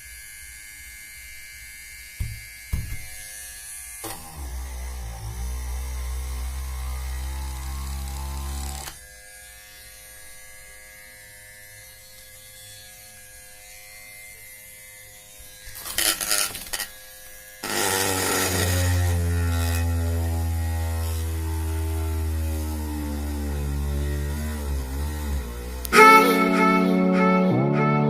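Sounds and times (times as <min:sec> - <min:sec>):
small motor buzzing: 0:00.0 - 0:26.5.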